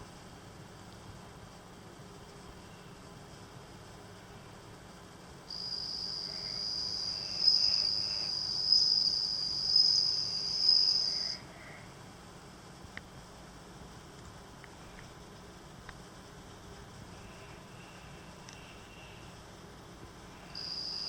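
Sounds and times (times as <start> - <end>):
cricket trilling: 5.5 - 11.8, 20.3 - 21.0.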